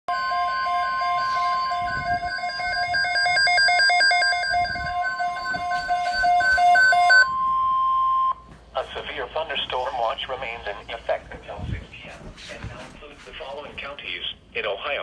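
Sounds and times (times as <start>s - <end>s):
steady weather alert tone: 0.1s - 12.0s.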